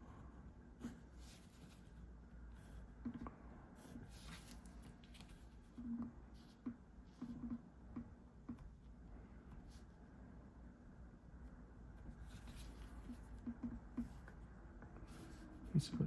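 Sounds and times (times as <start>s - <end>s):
pencil scratching on paper: 12.1s - 15.7s.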